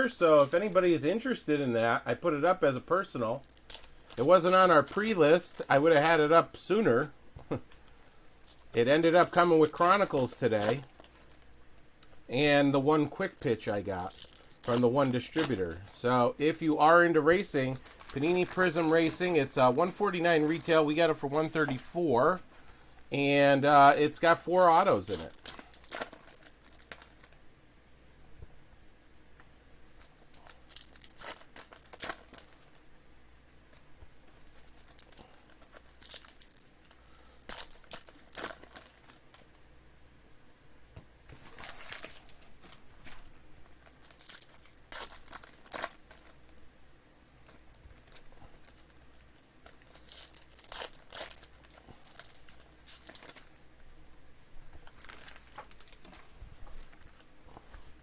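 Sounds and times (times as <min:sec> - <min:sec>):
wrappers tearing and crinkling: 0:03.0 - 0:06.3, 0:07.6 - 0:11.5, 0:12.8 - 0:21.8, 0:23.7 - 0:27.4, 0:30.0 - 0:32.8, 0:34.4 - 0:39.6, 0:41.3 - 0:46.6, 0:47.4 - 0:53.6, 0:54.7 - 0:57.3.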